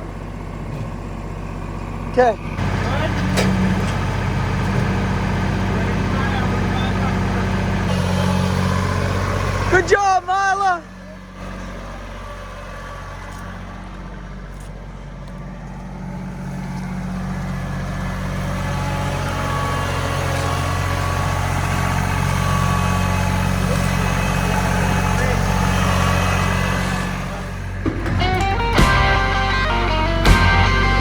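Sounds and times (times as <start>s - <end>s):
tractor diesel engine running: 0.0s - 31.0s.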